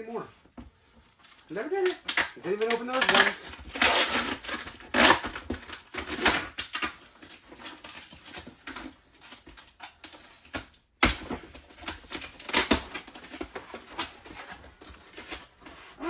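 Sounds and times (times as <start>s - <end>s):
packaging rustling: 0.2s - 10.6s
toys clicking and knocking: 1.5s - 3.8s.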